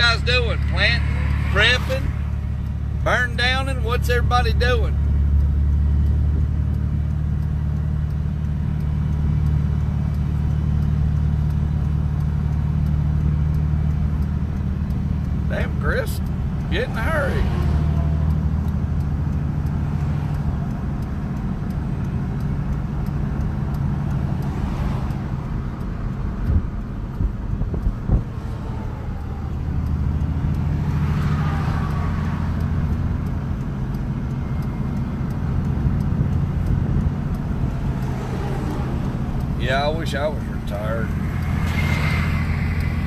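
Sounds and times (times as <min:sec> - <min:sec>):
vehicles rushing past: 0:00.0 - 0:43.0.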